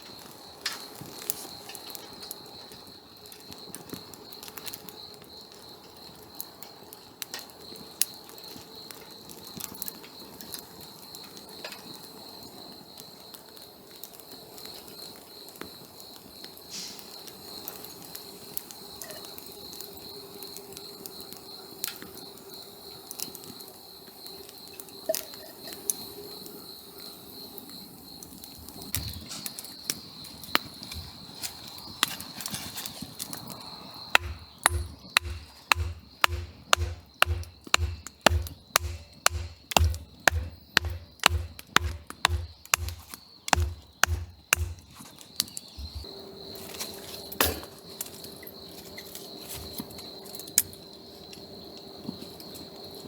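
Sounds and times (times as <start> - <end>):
crickets chirring: 0.0 - 53.0
chopping knocks: 34.2 - 44.9.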